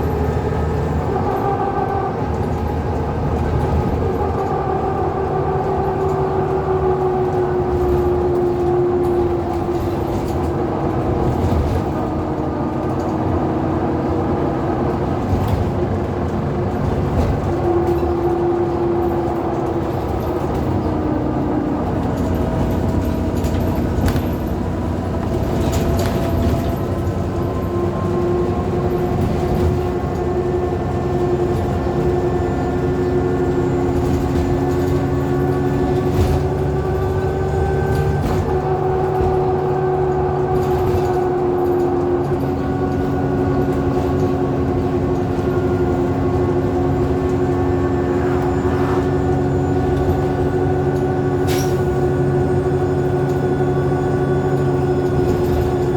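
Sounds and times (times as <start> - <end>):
bus engine rumble: 0.0 - 55.9.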